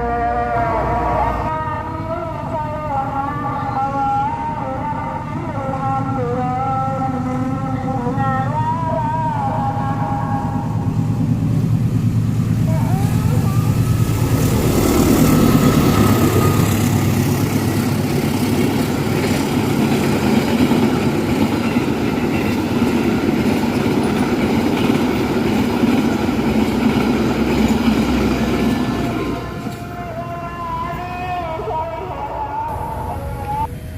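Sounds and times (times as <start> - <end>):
train wheels rumbling on rail: 5.3 - 31.5.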